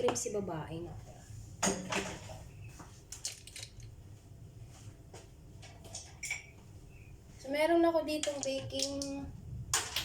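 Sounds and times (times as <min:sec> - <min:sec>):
utensils clicking and tapping: 0:08.1 - 0:09.2.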